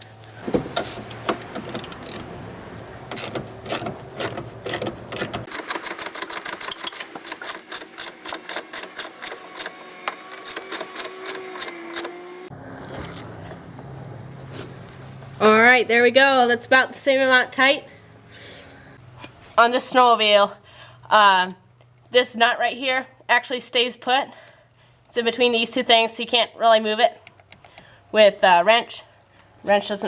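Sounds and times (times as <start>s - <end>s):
socket ratchet clicking: 1.4s - 2.3s.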